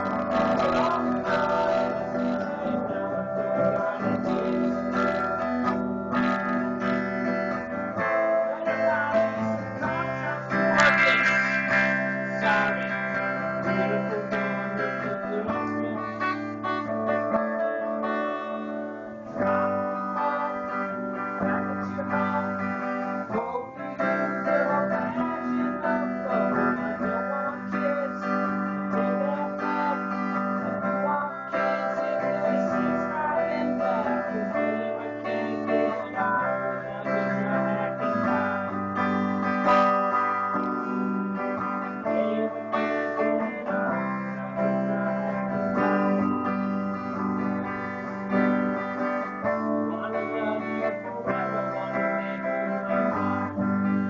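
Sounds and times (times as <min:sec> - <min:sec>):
bass line: 0:00.0 - 0:54.0
strummed guitar chords: 0:00.0 - 0:54.0.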